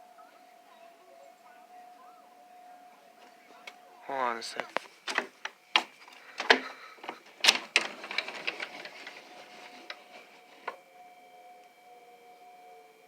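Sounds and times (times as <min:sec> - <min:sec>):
tornado warning siren wailing: 0:00.0 - 0:06.9, 0:07.9 - 0:13.0
handling clicks and knocks: 0:04.5 - 0:10.8.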